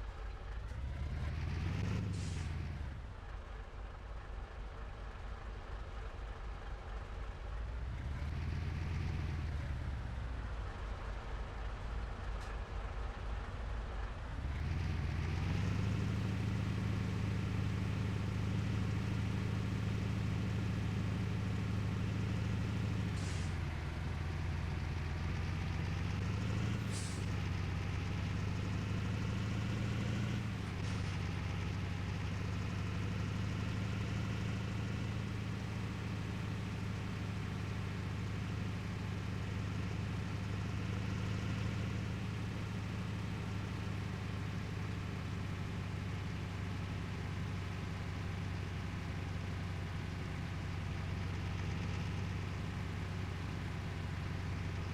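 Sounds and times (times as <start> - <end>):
truck diesel engine: 0.0 - 54.9.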